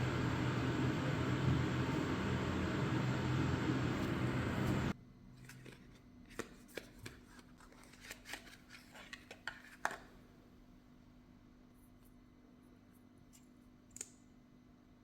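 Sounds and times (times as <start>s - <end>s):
steady loud noise: 0.0s - 4.9s.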